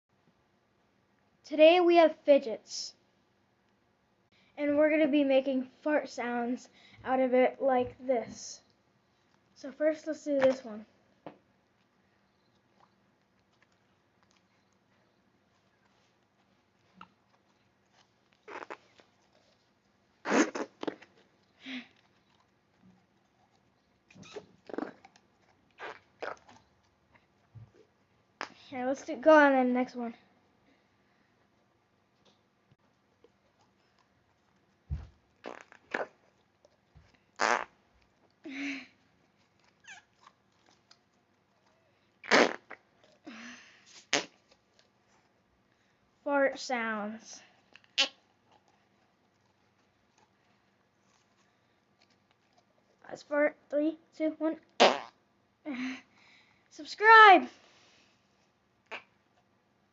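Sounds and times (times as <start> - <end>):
fidget toy fart noises: 18.4 - 19.0, 20.2 - 21.1, 24.2 - 25.0, 25.8 - 26.6, 35.4 - 36.2, 37.4 - 37.8, 42.2 - 42.9, 44.0 - 44.4, 48.0 - 48.2, 54.8 - 55.2.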